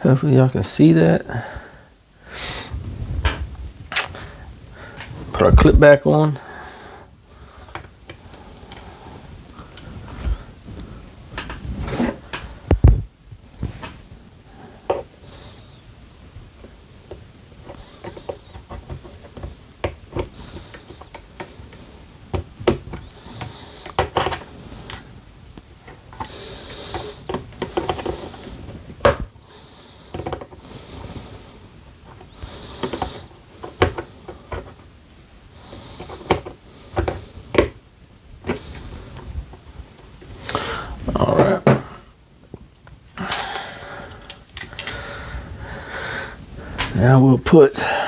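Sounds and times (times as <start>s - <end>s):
small parts clicking and tapping: 16.6s - 28.4s, 32.1s - 34.8s, 42.7s - 45.0s.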